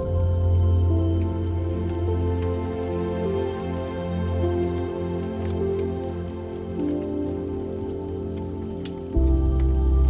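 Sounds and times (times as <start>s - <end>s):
slow ambient music: 0.0s - 10.0s
soft rain patter: 0.0s - 10.0s.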